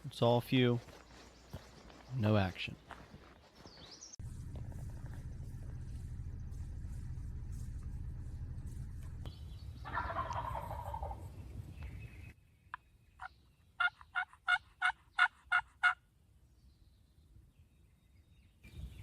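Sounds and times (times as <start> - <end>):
steady low rumble: 4.2 - 9.9
turkey rattling call: 9.8 - 11.2
turkey yelps: 9.8 - 11.2, 13.8 - 16.0.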